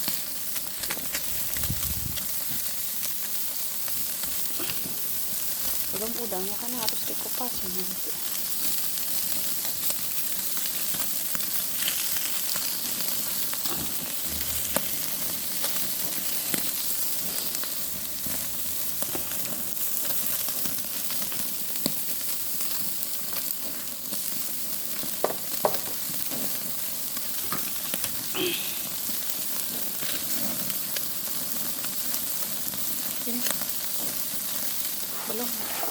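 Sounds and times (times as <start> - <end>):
prawns sizzling: 0.0 - 20.2, 27.1 - 30.5, 33.2 - 35.9.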